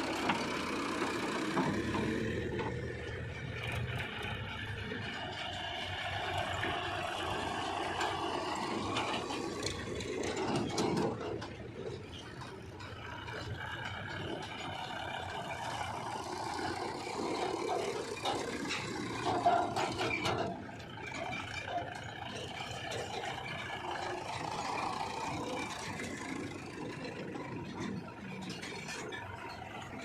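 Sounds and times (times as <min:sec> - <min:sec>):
backhoe loader engine running: 0:00.0 - 0:30.0
loud clatter: 0:00.0 - 0:30.0.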